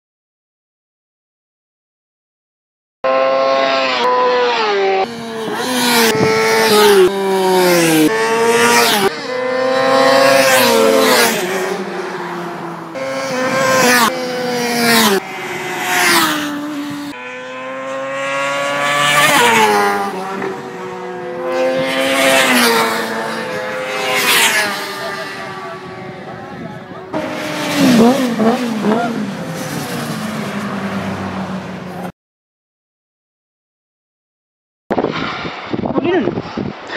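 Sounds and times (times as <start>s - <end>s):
sportbikes passing at speed: 3.1s - 32.1s.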